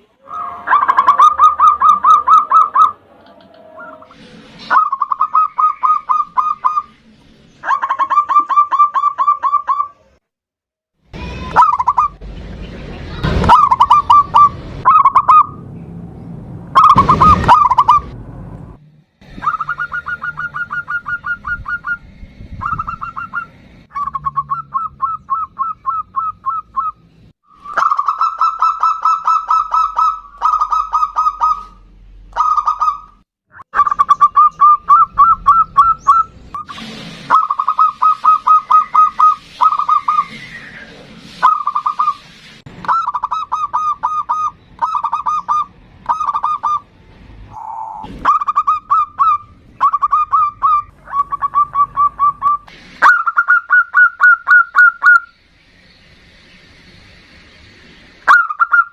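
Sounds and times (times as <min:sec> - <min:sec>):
dove cooing: 0:00.2 - 0:04.1, 0:19.3 - 0:22.0.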